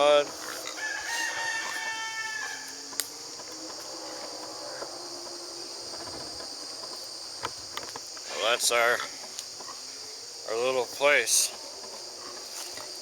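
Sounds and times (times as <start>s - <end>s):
insects chirring: 0.0s - 13.0s
chicken calling: 0.4s - 2.8s.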